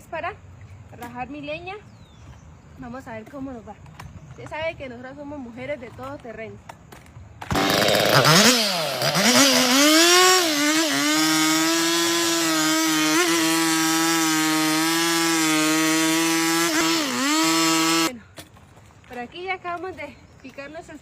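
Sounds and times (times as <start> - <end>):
chainsaw cutting logs: 7.4 - 18.1.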